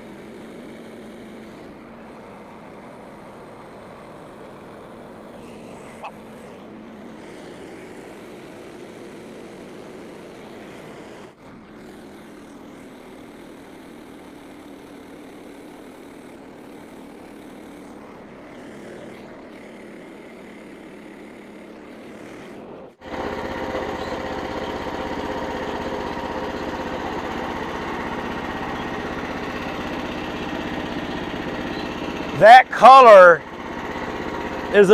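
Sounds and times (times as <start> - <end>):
small gasoline engine running: 0.0 - 34.9.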